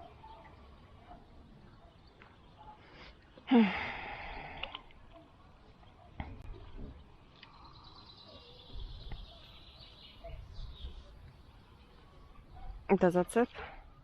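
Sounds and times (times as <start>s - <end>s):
small bird chirping trill: 7.4s - 13.2s.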